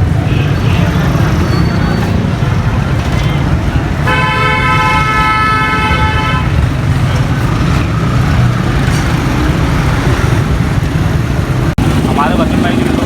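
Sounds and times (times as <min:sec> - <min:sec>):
low rumble of street traffic: 0:00.0 - 0:13.0
vehicle horn sounding: 0:04.0 - 0:06.7.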